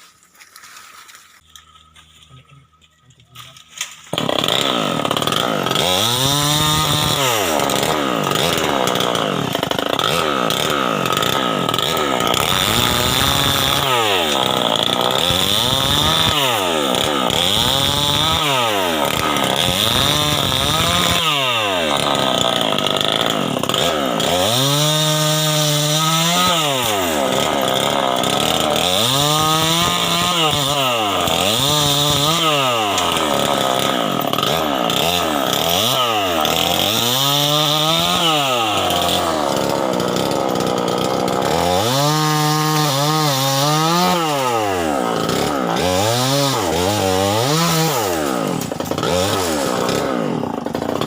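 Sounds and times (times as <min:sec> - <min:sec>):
chainsaw cutting wood: 0:03.6 - 0:51.0.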